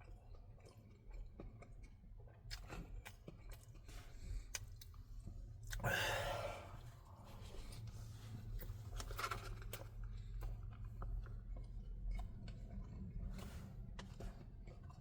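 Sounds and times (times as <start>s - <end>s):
person chewing food: 0.0s - 15.0s.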